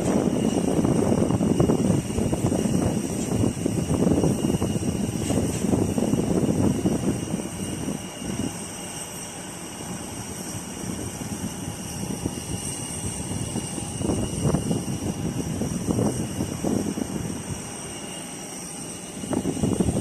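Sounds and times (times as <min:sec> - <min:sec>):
small aircraft engine running: 0:00.0 - 0:20.0.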